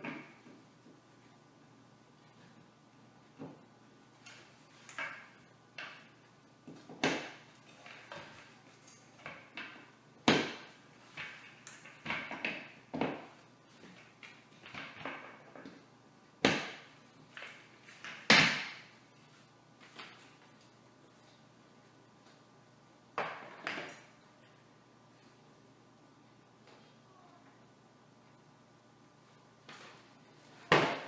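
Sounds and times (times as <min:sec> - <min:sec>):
chair parts knocking and clattering: 0:04.2 - 0:15.8, 0:16.4 - 0:19.0, 0:29.7 - 0:31.0.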